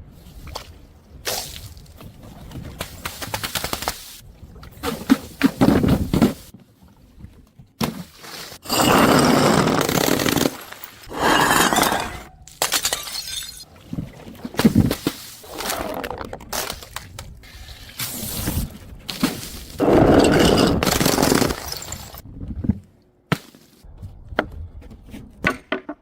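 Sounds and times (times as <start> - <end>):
glass shattering: 11.2 - 13.7, 20.1 - 22.2
clinking glass shards: 12.8 - 13.6.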